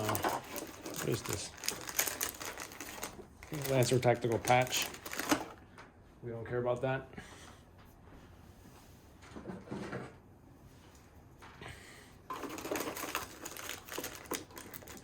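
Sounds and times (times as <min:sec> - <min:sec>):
packaging rustling: 0:00.0 - 0:05.6, 0:12.3 - 0:15.0.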